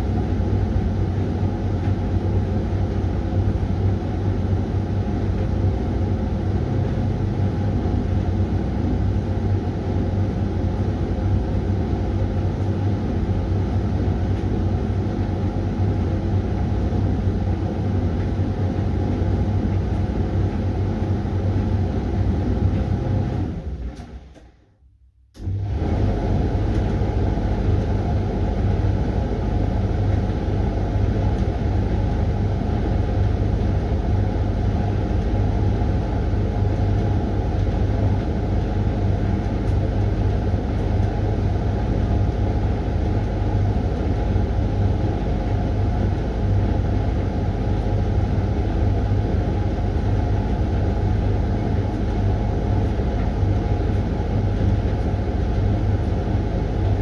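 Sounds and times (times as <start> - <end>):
washing machine humming: 0.0 - 57.0.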